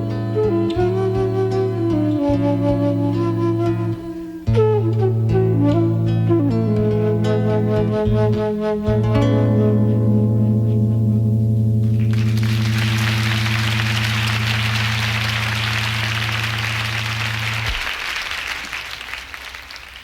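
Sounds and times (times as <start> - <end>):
audience applauding: 11.8 - 20.0.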